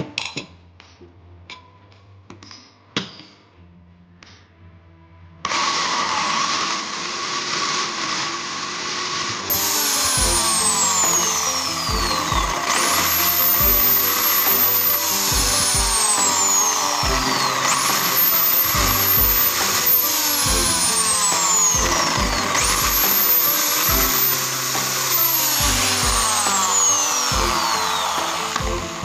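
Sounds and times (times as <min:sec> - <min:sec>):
electronic music with steady beat: 0:09.5 - 0:29.0
sweeping electronic effects: 0:09.5 - 0:29.0.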